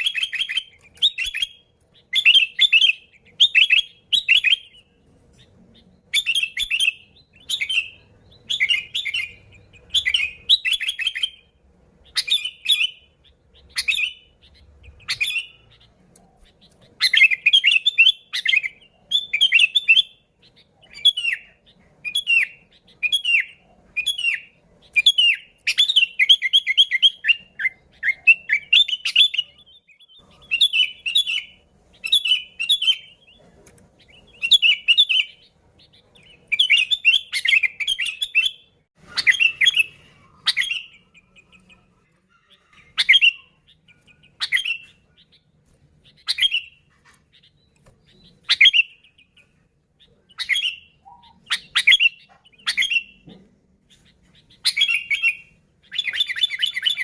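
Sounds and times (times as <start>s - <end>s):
bulbul singing: 0.0s - 57.0s
sharp downward-sliding bird calls: 36.5s - 41.8s.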